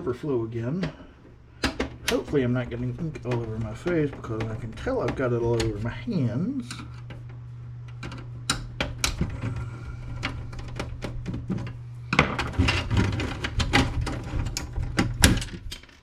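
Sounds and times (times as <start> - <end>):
low hum: 0.0 - 15.6
plastic clicks and knocks: 0.8 - 5.8.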